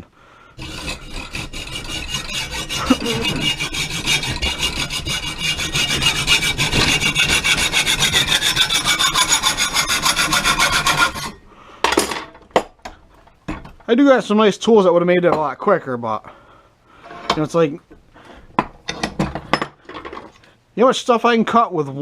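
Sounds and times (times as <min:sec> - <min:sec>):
hacksaw sawing copper tubing: 0:00.6 - 0:11.4.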